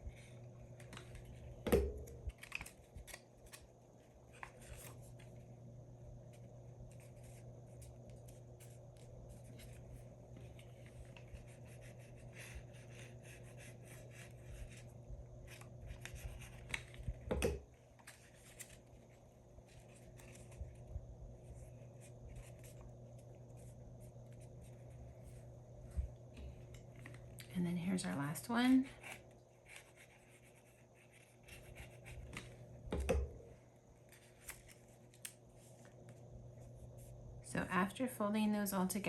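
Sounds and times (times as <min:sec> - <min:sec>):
steady low hum: 0:00.0 - 0:39.0
paper rustling and creasing: 0:02.2 - 0:05.5, 0:06.3 - 0:27.4, 0:34.0 - 0:37.1.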